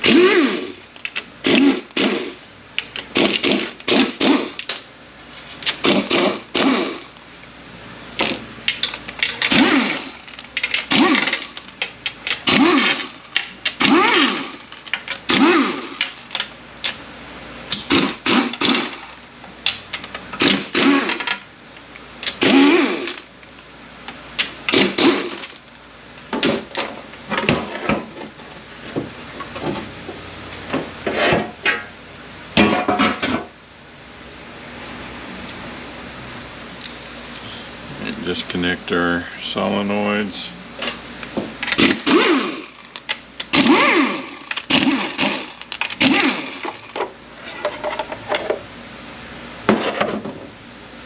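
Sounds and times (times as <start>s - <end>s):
power ratchet spinning: 0.0s - 4.8s, 5.5s - 7.2s, 8.2s - 16.5s, 17.7s - 21.5s, 22.2s - 23.3s, 24.4s - 25.6s, 41.6s - 47.0s
steady hum: 0.0s - 51.0s
metal parts clinking: 8.7s - 16.5s.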